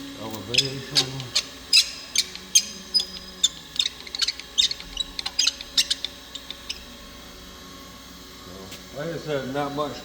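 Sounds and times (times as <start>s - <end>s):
handwheel squeaky clicks: 0.5s - 6.8s.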